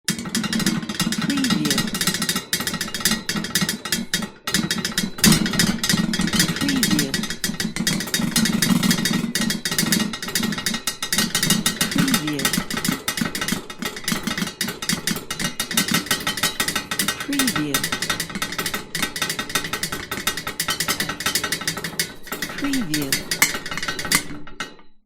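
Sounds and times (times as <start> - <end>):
iron objects rattling: 4.8 - 24.6.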